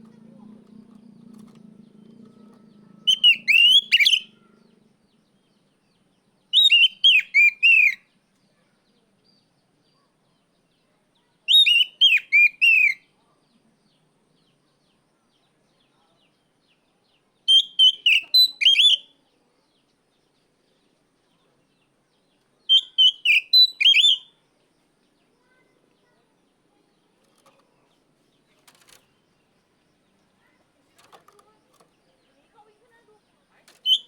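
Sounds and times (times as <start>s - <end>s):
bird whistled calls: 3.0s - 4.4s, 6.5s - 8.0s, 11.5s - 13.0s, 17.5s - 19.1s, 22.7s - 24.3s, 33.8s - 34.0s.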